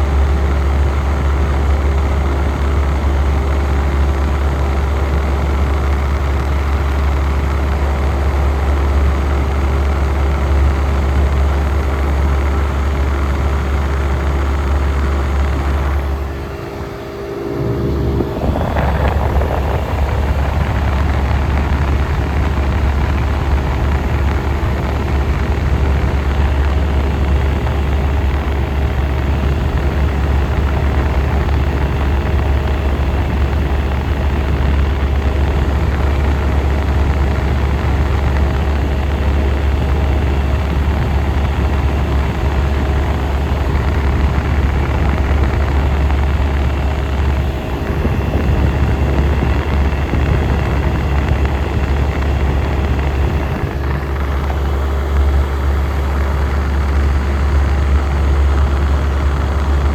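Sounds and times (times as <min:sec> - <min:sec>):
air conditioner humming: 0:13.7 - 0:34.6.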